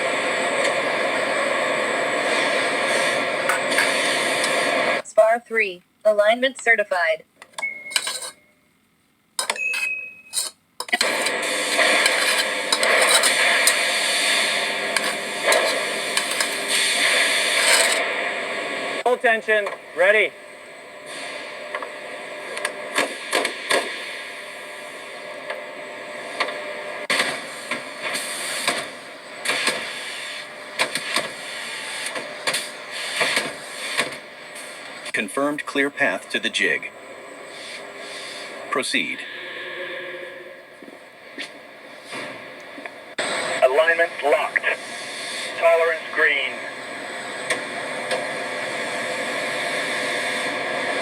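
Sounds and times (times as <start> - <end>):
workshop hiss: 0.0 - 5.0, 11.0 - 25.4, 26.1 - 51.0
metal tools clinking and scraping: 7.9 - 8.5, 9.4 - 10.6.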